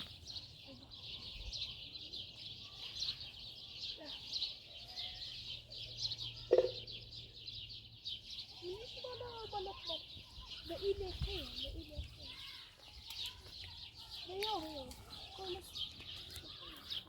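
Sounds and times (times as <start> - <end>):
birds chirping: 0.0 - 17.0
faint low bird calls: 0.0 - 17.0.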